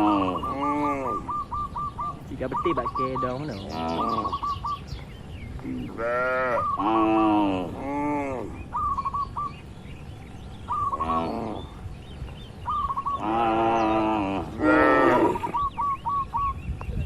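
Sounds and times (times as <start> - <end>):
cattle mooing: 0.0 - 1.3, 5.9 - 8.6, 10.9 - 11.8, 13.2 - 15.6
bird chirping: 0.0 - 17.0.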